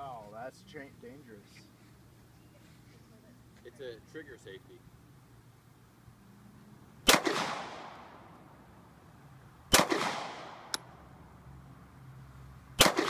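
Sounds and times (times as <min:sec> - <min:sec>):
pistol shots with echo: 0:07.0 - 0:08.3, 0:09.7 - 0:10.8, 0:12.8 - 0:13.0.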